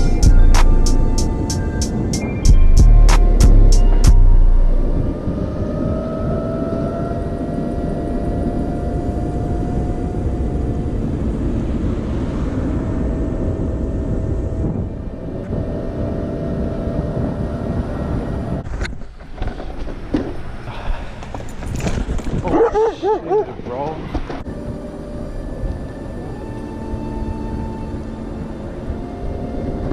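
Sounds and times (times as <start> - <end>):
wind: 0.0 - 29.9
skateboard wheel noise: 18.6 - 22.7
electric motor whine: 24.4 - 29.9.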